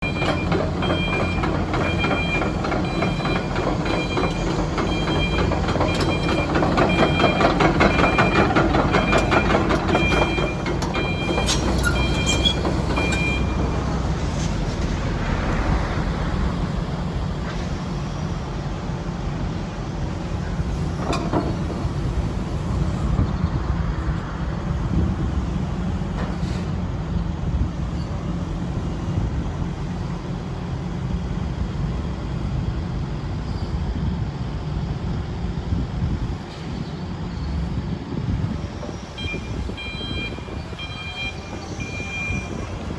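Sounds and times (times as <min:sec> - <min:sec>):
two-tone alarm beeping: 0:00.0 - 0:13.7, 0:39.2 - 0:42.9
steel tracks clanking: 0:00.0 - 0:23.2
diesel engine running: 0:00.0 - 0:42.9.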